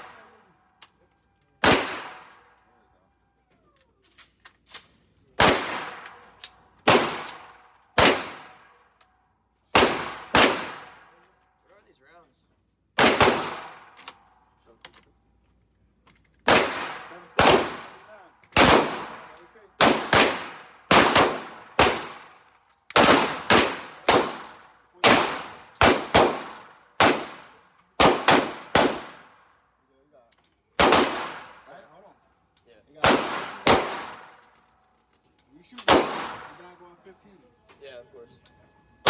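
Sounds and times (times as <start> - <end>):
pistol shots echoing: 1.6 - 2.4, 5.4 - 8.8, 9.7 - 11.1, 13.0 - 14.0, 16.5 - 29.4, 30.8 - 31.7, 33.0 - 34.5, 35.8 - 36.7.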